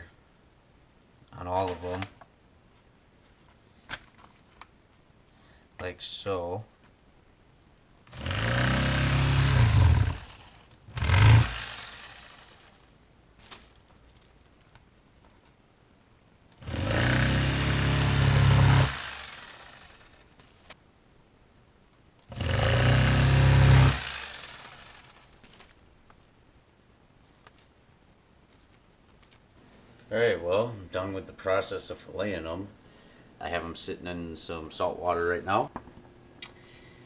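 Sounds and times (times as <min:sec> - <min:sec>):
electric fillet knife buzzing: 0:08.1 - 0:12.8, 0:16.6 - 0:20.2, 0:22.3 - 0:25.2.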